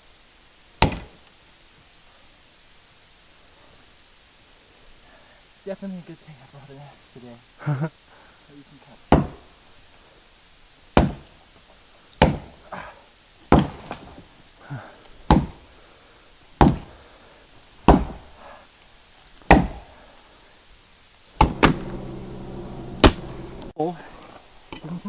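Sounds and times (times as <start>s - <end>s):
axe chopping into log: 0.8s - 1.1s, 9.1s - 9.4s, 11.0s - 11.3s, 12.2s - 12.5s, 13.5s - 14.1s, 15.3s - 15.6s, 16.6s - 16.9s, 17.8s - 18.2s, 19.5s - 19.8s.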